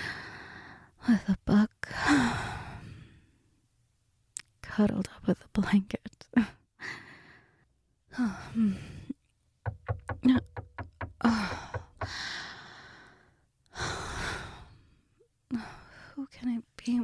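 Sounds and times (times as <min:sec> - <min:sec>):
sharp taps: 0:09.7 - 0:12.2
woman breathing and sighing: 0:11.0 - 0:14.8.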